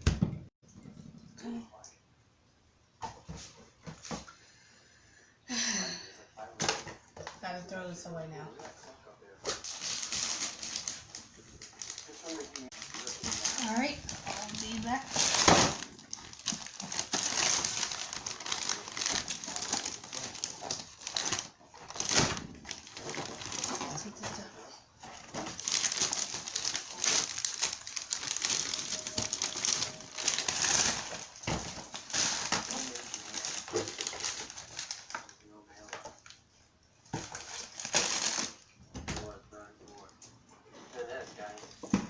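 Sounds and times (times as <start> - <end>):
packaging crinkling: 9.5 - 24.4, 25.0 - 35.4, 37.1 - 38.6.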